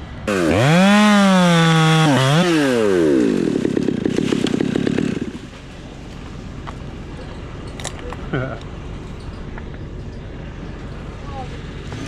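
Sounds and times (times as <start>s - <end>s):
chainsaw revving and idling: 0.2s - 5.8s.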